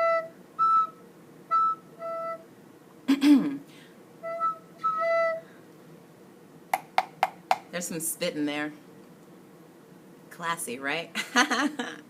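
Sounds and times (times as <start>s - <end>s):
recorder playing notes: 0.0s - 2.5s, 4.2s - 5.4s.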